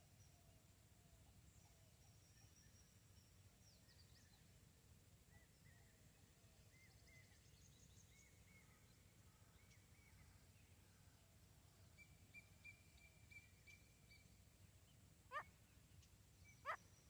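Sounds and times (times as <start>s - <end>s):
faint bird calls: 15.3s - 15.8s, 16.4s - 17.0s.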